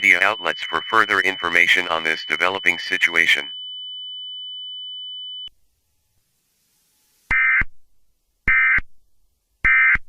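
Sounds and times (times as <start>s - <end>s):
high electronic tone: 0.0s - 3.5s.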